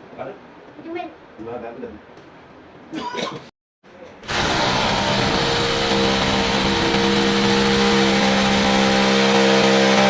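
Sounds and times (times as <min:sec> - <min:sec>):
motor running steadily: 0:04.3 - 0:10.0.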